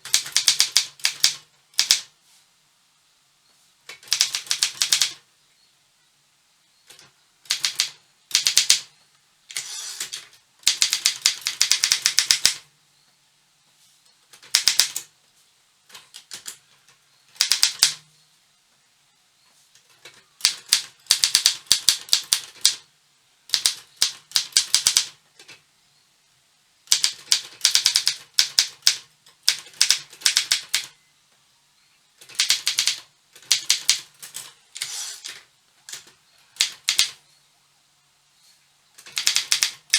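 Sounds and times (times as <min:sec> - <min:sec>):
manual typewriter key strikes: 0:00.0 - 0:02.0, 0:06.9 - 0:08.8, 0:09.5 - 0:12.6, 0:17.4 - 0:18.0, 0:20.4 - 0:22.8, 0:23.5 - 0:25.1, 0:26.9 - 0:30.9, 0:32.2 - 0:37.2, 0:39.0 - 0:39.9.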